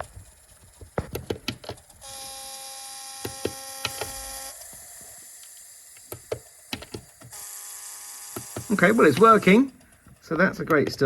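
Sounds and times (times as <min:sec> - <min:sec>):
buzzing tone from small speaker: 0:02.0 - 0:04.8.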